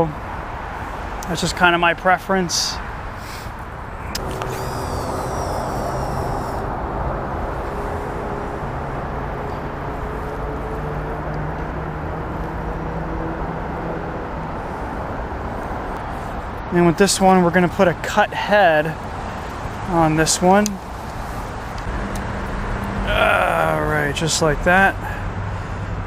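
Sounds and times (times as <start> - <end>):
road traffic rumble: 0.0 - 26.0
heavy vehicle engine hum: 3.1 - 16.7, 19.0 - 26.0
high squeal: 4.0 - 8.2.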